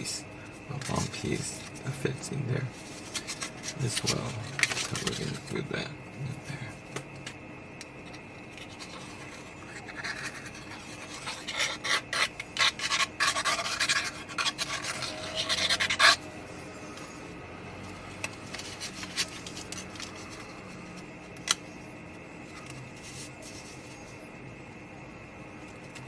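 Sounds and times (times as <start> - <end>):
scratchy rubbing on cardstock: 8.6 - 16.2.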